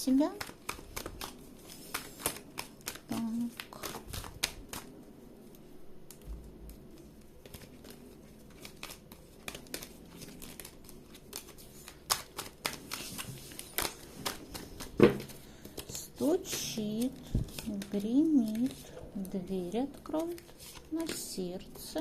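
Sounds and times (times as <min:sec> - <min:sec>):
cards shuffled and laid out: 0:06.1 - 0:18.8.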